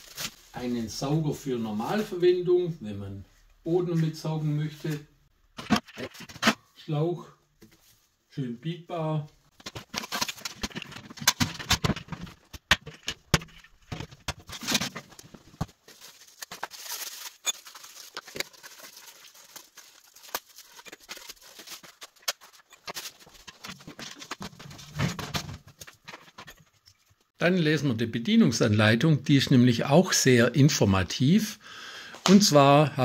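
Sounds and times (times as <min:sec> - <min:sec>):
vacuum parts and packaging rustling: 0:00.0 - 0:00.6, 0:09.5 - 0:27.2.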